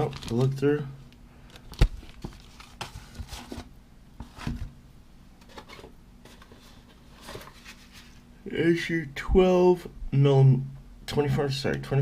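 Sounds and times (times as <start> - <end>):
soft taps and rustles of packaging: 1.7 - 4.7.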